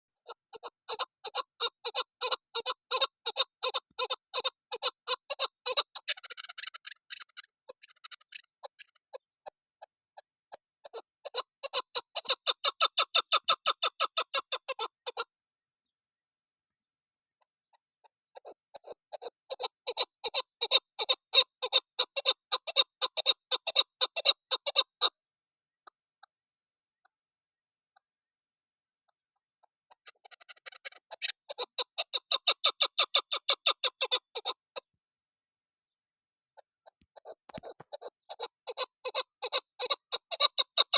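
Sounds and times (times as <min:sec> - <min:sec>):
partridge chuk calls: 0:00.2 - 0:09.6, 0:10.5 - 0:15.3, 0:17.6 - 0:25.1, 0:29.6 - 0:34.8, 0:36.6 - 0:40.9.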